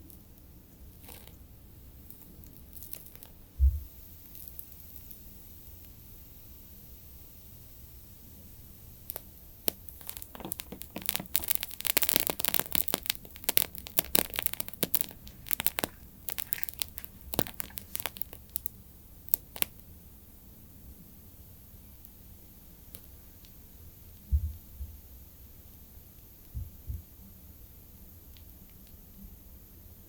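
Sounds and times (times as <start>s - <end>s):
candle wick crackling: 0.0s - 19.9s.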